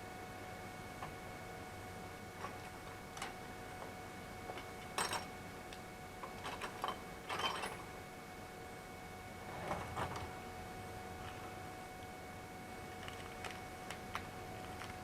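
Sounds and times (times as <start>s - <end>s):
three d printer humming: 0.0s - 15.0s.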